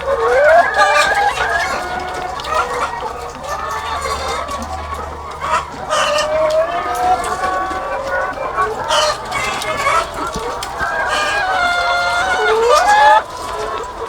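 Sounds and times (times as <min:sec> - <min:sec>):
hens clucking: 0:00.0 - 0:14.0.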